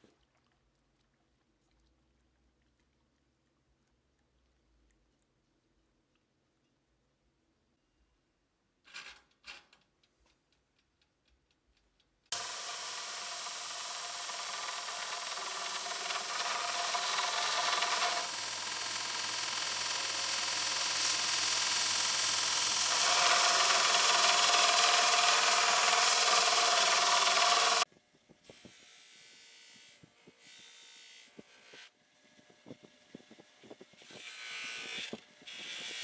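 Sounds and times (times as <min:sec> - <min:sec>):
power tool grinding on steel: 0:12.3 - 0:27.9.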